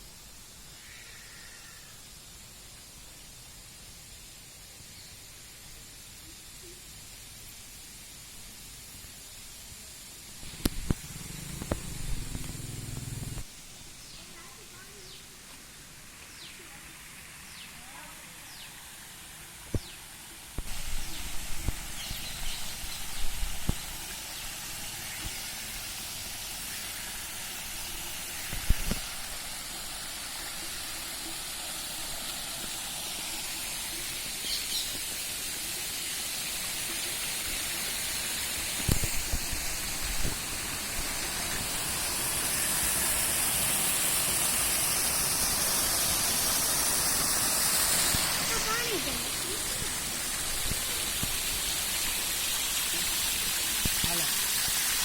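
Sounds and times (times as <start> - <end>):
river water rushing: 39.2 - 55.0.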